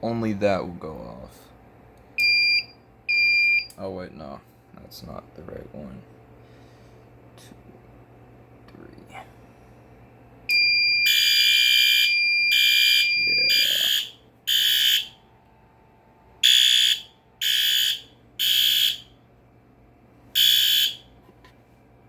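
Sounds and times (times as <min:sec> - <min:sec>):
high steady beep: 0:10.5 - 0:15.1
fire alarm horn blasts: 0:10.5 - 0:15.3, 0:16.4 - 0:19.2, 0:20.4 - 0:21.2.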